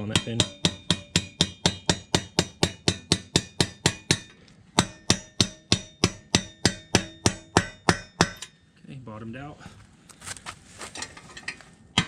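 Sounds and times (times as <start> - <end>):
hammer striking metal socket: 0.0 - 8.6.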